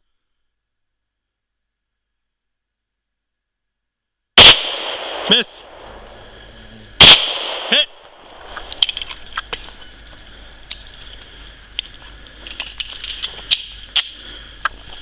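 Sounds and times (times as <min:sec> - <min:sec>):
footsteps on rocky ground: 0:08.3 - 0:10.2.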